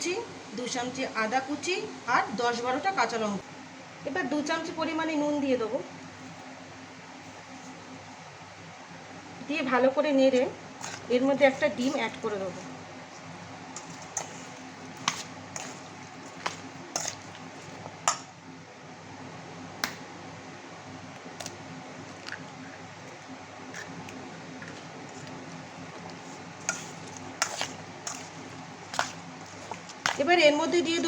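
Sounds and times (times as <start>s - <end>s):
steady low hum: 0.0s - 31.0s
soft squishing of raw meat: 10.8s - 18.2s, 21.2s - 30.5s.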